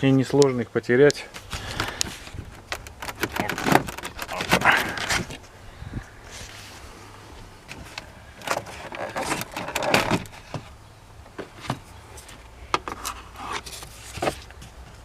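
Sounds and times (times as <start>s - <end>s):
plastic trim clicks and scrapes: 1.7s - 5.4s.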